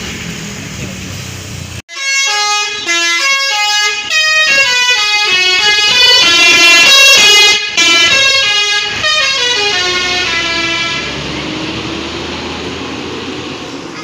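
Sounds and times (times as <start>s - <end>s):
low engine rumble: 0.0s - 1.8s
bus horn playing a tune: 1.9s - 11.3s.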